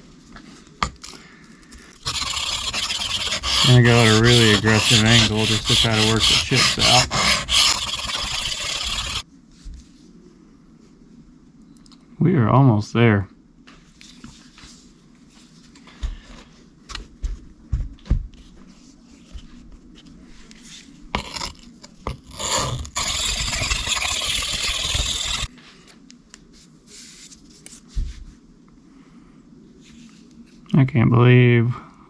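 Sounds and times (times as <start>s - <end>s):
knife scraping on sharpening plate: 2.1s - 9.2s, 22.3s - 25.5s.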